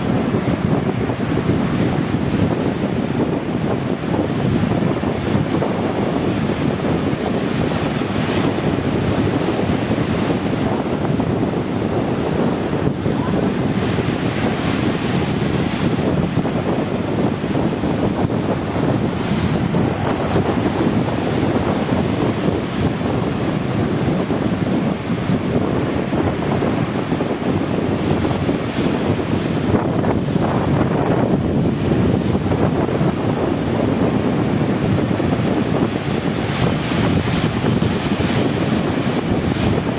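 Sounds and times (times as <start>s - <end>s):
sea waves washing: 0.0s - 39.9s
wind on microphone: 0.0s - 39.9s.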